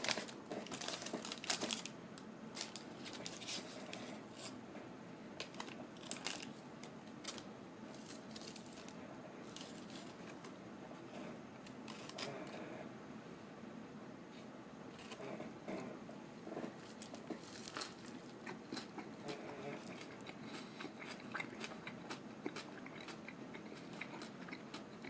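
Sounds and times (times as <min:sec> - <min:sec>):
paper wrapper crinkling: 0:00.0 - 0:04.6, 0:05.4 - 0:10.4, 0:11.6 - 0:12.4, 0:16.8 - 0:18.3.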